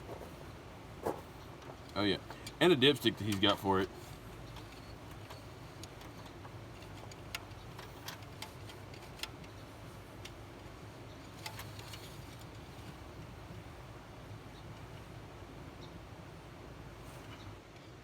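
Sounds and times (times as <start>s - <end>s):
low steady hum: 0.0s - 18.0s
faint clicks and taps: 4.4s - 13.0s.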